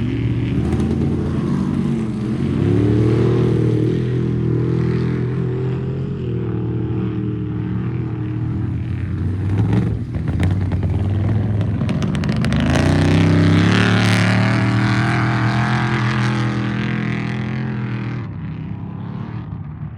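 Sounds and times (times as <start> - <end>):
truck engine running hard: 0.0 - 19.9
clatter: 8.6 - 16.3.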